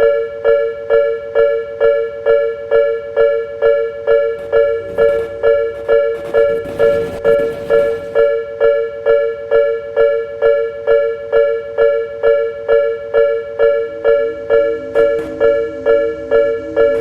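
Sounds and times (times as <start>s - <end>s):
train passing: 4.0s - 8.4s, 13.0s - 17.0s.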